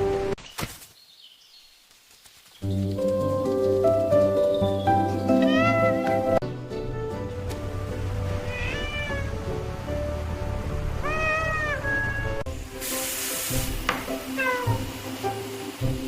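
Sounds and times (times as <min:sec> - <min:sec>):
background music: 0:02.6 - 0:16.0
cat meowing: 0:05.4 - 0:06.2, 0:08.4 - 0:09.4, 0:11.0 - 0:12.5, 0:14.3 - 0:14.8
brief hissing noise: 0:12.7 - 0:13.9.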